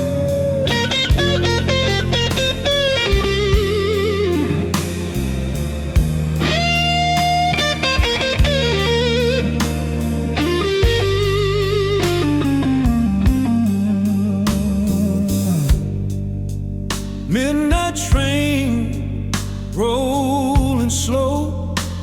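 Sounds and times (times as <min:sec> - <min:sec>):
electric lead guitar: 0:00.0 - 0:20.6
bass and chords: 0:00.0 - 0:22.0
drum hits: 0:01.1 - 0:04.1, 0:06.0 - 0:08.9.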